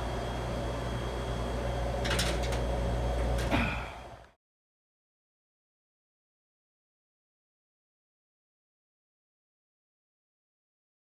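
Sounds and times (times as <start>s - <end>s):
machinery humming: 0.0s - 4.3s.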